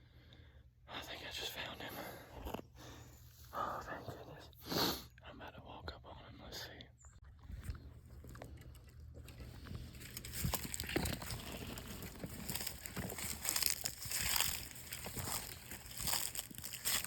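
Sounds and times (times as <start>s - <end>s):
footsteps crunching through dry leaves: 10.0s - 17.0s.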